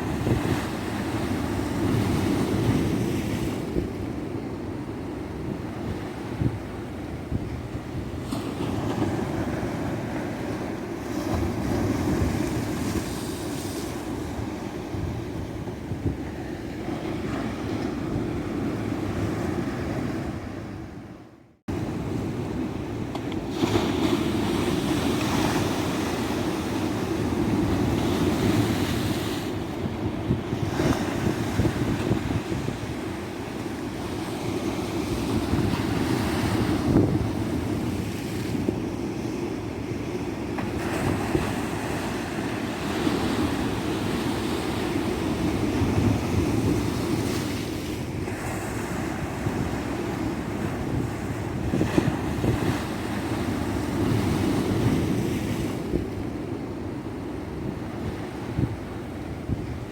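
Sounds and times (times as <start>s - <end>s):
wind buffeting microphone: 0.0s - 21.0s, 21.7s - 39.4s, 40.0s - 59.9s.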